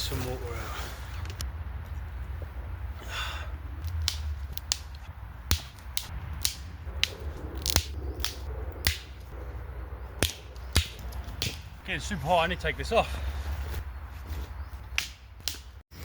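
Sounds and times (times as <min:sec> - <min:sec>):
low wind rumble: 0:00.0 - 0:16.0
dry sticks snapping: 0:03.8 - 0:09.4, 0:10.2 - 0:11.8, 0:14.8 - 0:15.8.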